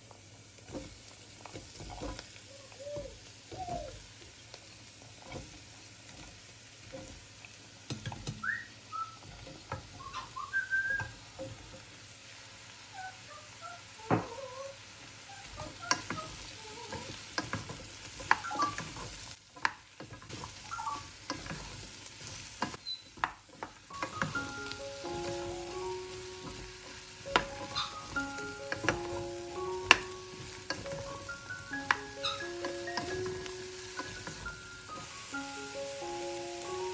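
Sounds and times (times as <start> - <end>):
faint sizzle: 0.0 - 36.9
spoon stirring and tapping pot: 0.6 - 3.9, 7.8 - 8.4, 9.2 - 10.0, 15.5 - 35.7
pet bird chirping whistles: 8.4 - 9.2, 10.0 - 11.2, 20.7 - 21.1, 27.4 - 28.0.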